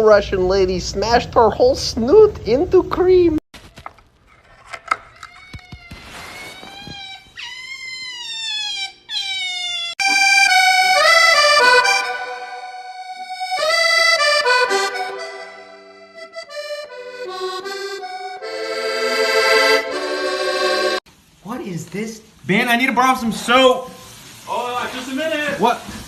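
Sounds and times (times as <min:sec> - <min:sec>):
long cries sliding down in pitch: 0:06.1 - 0:21.0
accordion music: 0:10.0 - 0:21.0.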